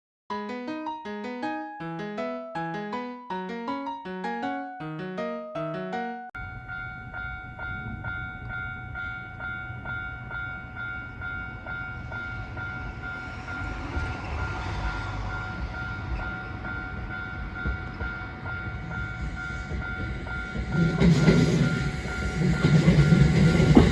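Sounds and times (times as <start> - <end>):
level crossing bell ringing: 4.0 - 23.9
train rumble: 6.5 - 23.9.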